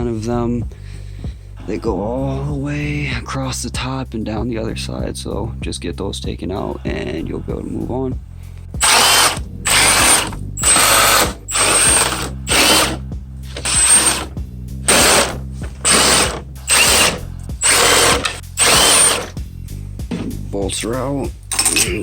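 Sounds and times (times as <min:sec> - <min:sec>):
cordless power tool whining: 0:08.8 - 0:19.3.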